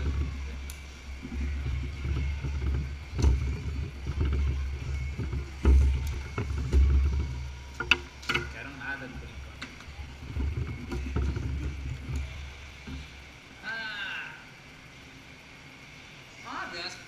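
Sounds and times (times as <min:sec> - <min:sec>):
low handling rumble: 0:00.0 - 0:13.6.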